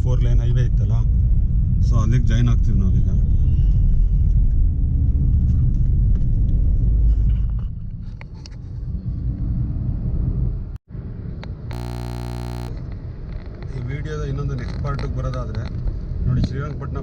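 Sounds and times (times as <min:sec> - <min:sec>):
road and wind rumble: 0:00.1 - 0:11.4.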